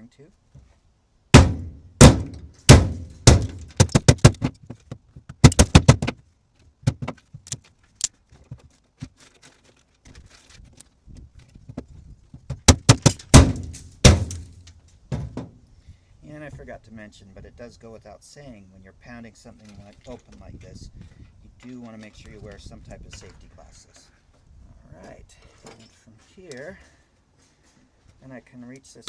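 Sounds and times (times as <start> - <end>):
sledgehammer pounding on metal: 1.3 - 4.5, 5.4 - 6.1, 12.7 - 15.6.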